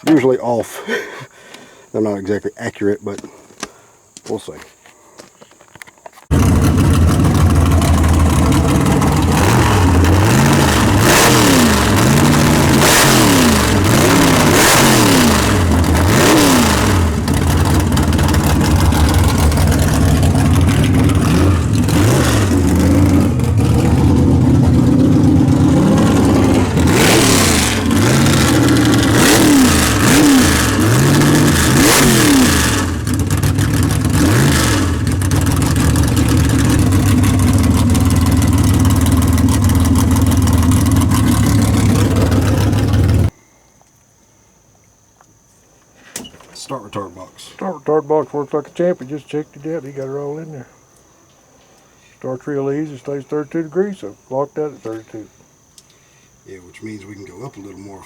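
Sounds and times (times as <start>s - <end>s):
car engine revving: 6.3s - 43.3s.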